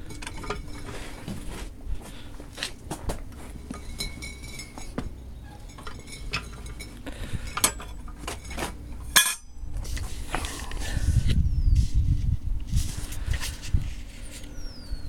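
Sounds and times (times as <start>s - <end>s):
metal parts rattling: 0.0s - 1.3s, 3.4s - 9.5s
metallic clinks and knocks: 0.0s - 1.5s, 3.3s - 9.6s.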